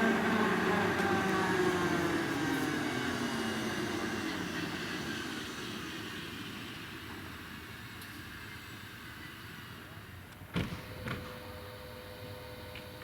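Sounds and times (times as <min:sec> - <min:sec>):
helicopter winding down: 0:00.0 - 0:06.4.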